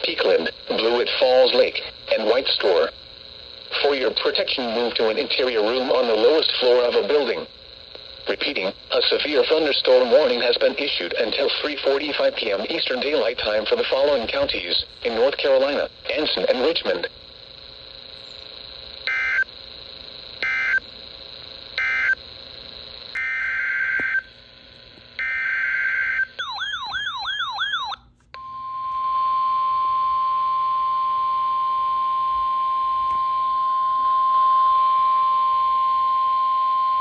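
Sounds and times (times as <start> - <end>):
screeching data bursts: 0.0 - 28.2
steady warning alarm tone: 0.0 - 37.0.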